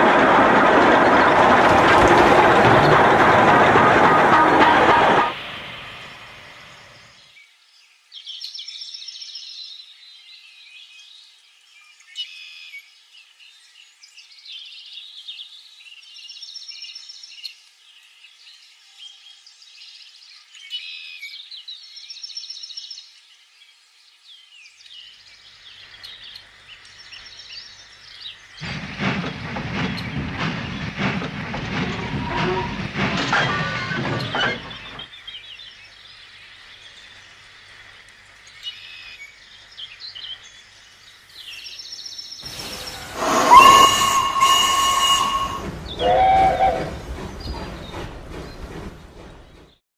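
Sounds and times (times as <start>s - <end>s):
loud rushing rumbling noise: 0.0s - 7.0s, 42.4s - 46.0s
train running: 0.0s - 7.2s, 27.1s - 35.3s, 42.4s - 49.8s
birds chirping: 38.5s - 49.8s.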